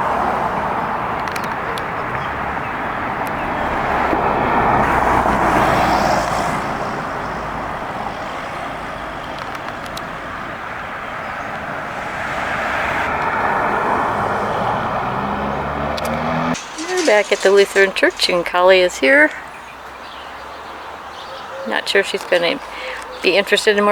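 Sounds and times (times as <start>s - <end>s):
car passing: 0.0s - 9.3s, 10.1s - 20.6s.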